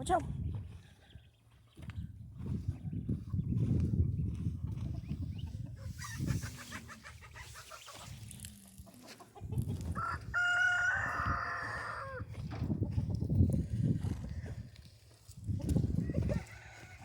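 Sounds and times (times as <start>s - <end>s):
rooster crowing: 10.0s - 12.2s, 16.0s - 17.0s
low thumps and rumbling: 12.3s - 14.6s.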